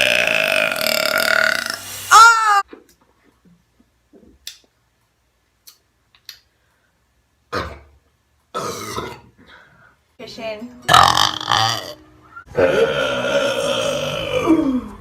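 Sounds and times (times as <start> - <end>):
woman belching: 0.0 - 1.8, 8.6 - 9.3, 10.9 - 14.9.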